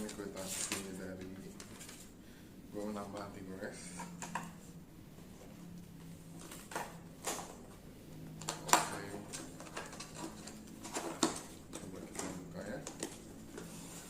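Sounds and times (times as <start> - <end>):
paper packaging rustling: 0.0 - 2.2
faint steady hum: 0.0 - 14.0.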